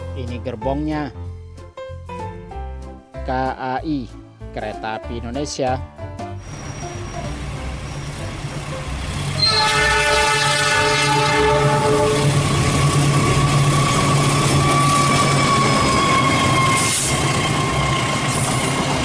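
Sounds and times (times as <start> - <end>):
multi-tone train horn: 9.4 - 18.2.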